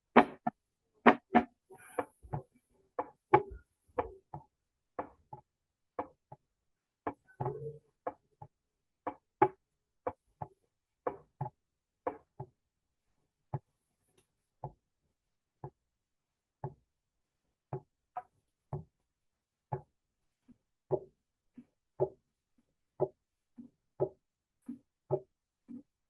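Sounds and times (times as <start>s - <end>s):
heartbeat thumps: 0.2s - 0.5s, 1.1s - 1.5s.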